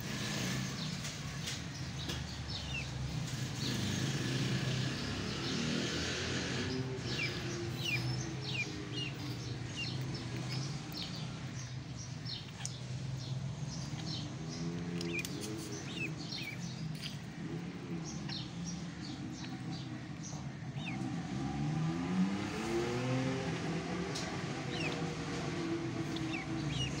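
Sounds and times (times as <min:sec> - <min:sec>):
vehicle engine revving: 0:00.0 - 0:27.0
ducklings peeping: 0:00.1 - 0:27.0.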